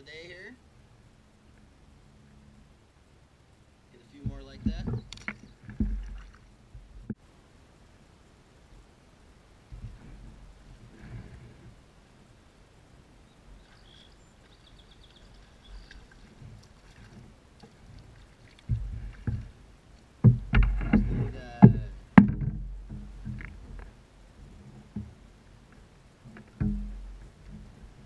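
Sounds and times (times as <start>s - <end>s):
knocking on a kayak: 4.2s - 5.0s, 20.2s - 23.5s, 26.6s - 27.2s.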